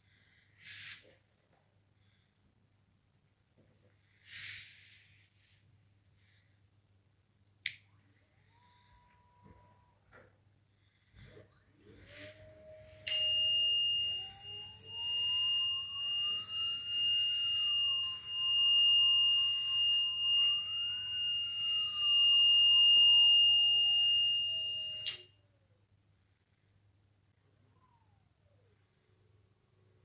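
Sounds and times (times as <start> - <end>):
motor whining: 11.3 - 25.2
steady high beep tone: 12.8 - 25.2.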